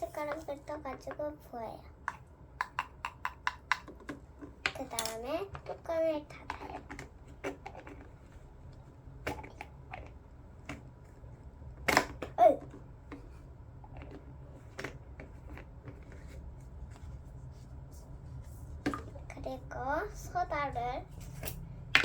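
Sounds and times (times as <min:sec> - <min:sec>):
plastic containers clicking and tapping: 0:00.1 - 0:01.3, 0:02.0 - 0:08.2, 0:09.2 - 0:10.9, 0:13.9 - 0:16.4, 0:18.8 - 0:19.4.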